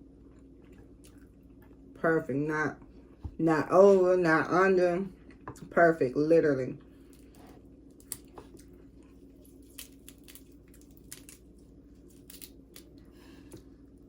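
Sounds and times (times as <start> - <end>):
low steady hum: 0.0 - 14.0
crab shell cracking and clicking: 7.9 - 8.7, 9.6 - 13.7.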